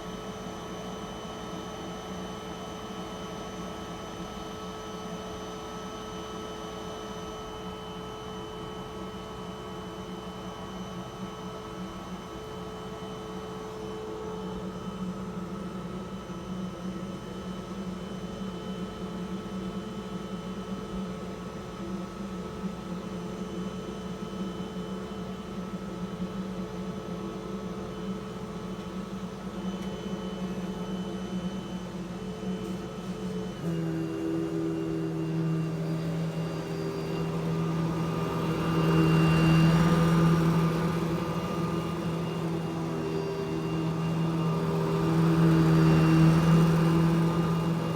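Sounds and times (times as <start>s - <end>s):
vacuum cleaner motor whine: 22.6s - 47.9s.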